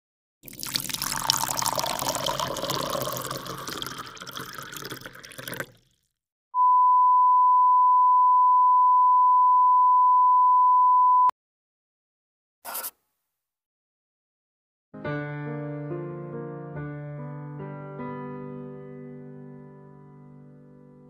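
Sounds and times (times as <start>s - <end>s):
steady pure censor beep: 6.6s - 11.4s.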